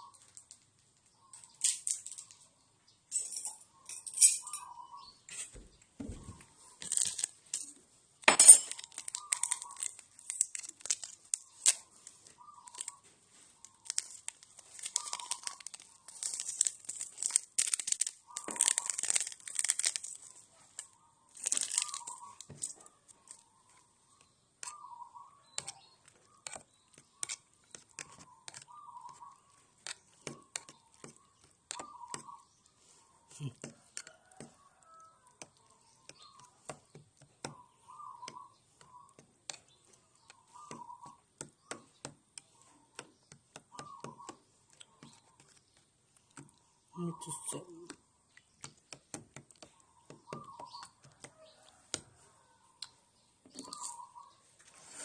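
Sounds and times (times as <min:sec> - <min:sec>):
plastic packaging crinkling: 0:06.8 - 0:07.7, 0:08.5 - 0:23.4
plastic tearing crack: 0:06.8 - 0:07.7, 0:08.6 - 0:11.9, 0:13.6 - 0:22.7.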